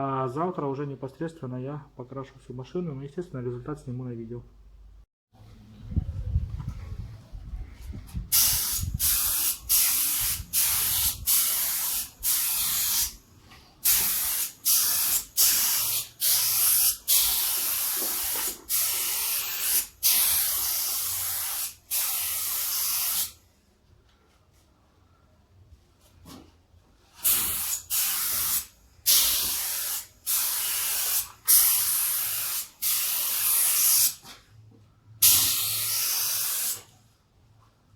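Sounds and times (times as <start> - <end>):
paint spray gun hissing: 8.3 - 13.2, 13.9 - 23.3, 27.2 - 34.2, 35.2 - 36.8.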